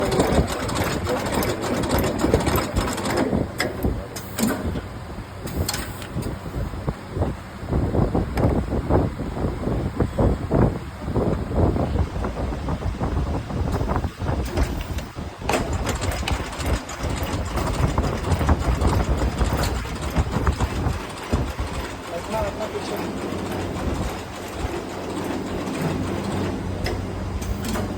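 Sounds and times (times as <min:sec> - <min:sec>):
irregular clicks and knocks: 0:00.0 - 0:04.9, 0:13.7 - 0:27.9
lacing machine clattering: 0:00.0 - 0:04.9, 0:13.7 - 0:27.9.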